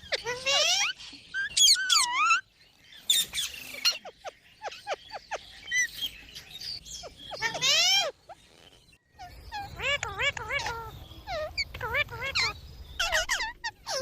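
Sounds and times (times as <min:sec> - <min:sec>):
parrot chirping: 0:00.0 - 0:14.0
parrot screeching: 0:07.4 - 0:08.1, 0:09.2 - 0:14.0.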